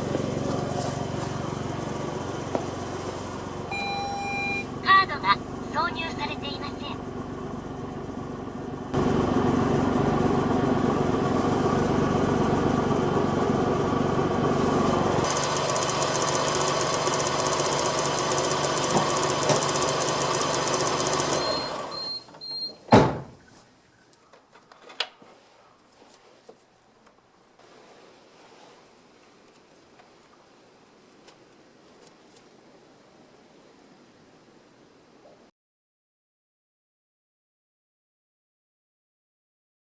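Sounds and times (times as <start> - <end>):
car engine running: 0.0 - 22.1
short high beeps: 3.7 - 4.7.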